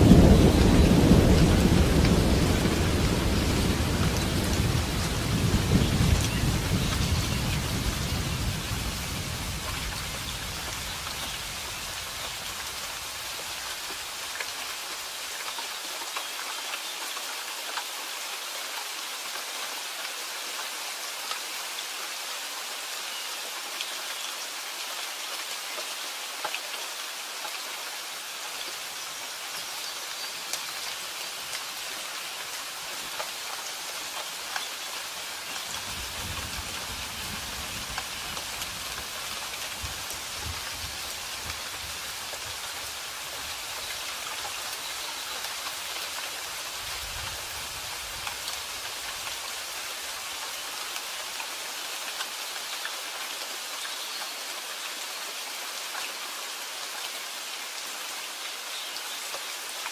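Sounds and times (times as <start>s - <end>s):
low rumble of thunder: 0.0s - 11.7s
steady rain falling: 0.0s - 59.9s
rain drop ticks: 33.1s - 34.7s.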